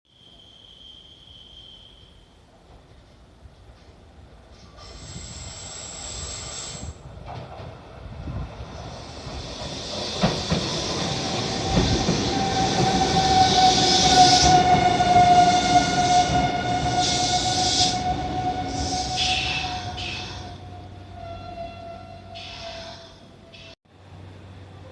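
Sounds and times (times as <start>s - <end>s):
electric train rumbling: 1.3s - 24.9s
high squeal or whine: 11.5s - 22.7s.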